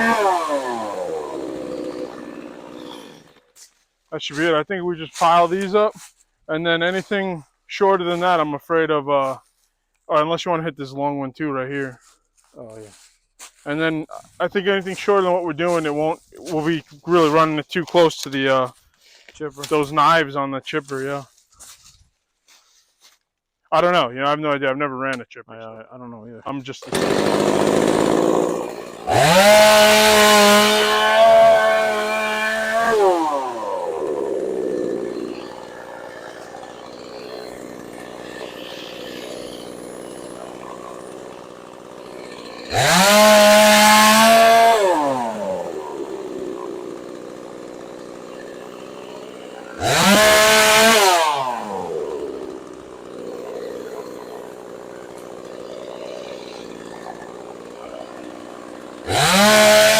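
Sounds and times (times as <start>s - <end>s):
chainsaw revving and idling: 0.0s - 3.7s, 4.3s - 6.2s, 12.0s - 18.0s, 26.8s - 59.9s.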